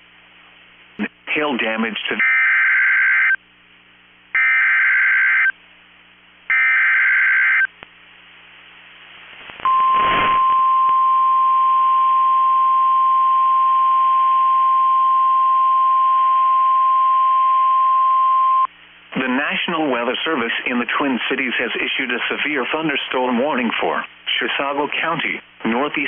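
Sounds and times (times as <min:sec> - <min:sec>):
steady warning alarm tone: 0:06.5 - 0:07.7
burst of noise: 0:09.3 - 0:10.6.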